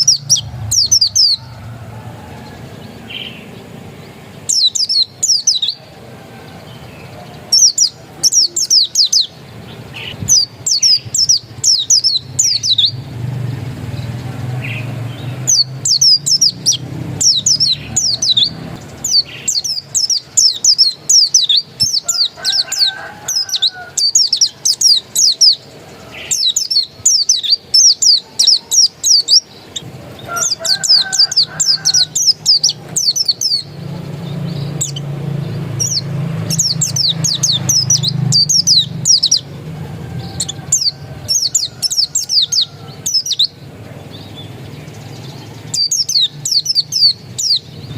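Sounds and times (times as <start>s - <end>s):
low background rumble: 0.0s - 5.0s
bird singing high chirps: 0.0s - 6.0s, 6.6s - 47.9s.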